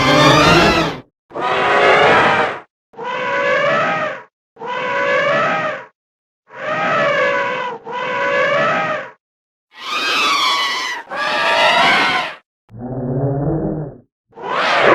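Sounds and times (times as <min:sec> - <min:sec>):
elephant trumpeting: 0:00.0 - 0:05.8.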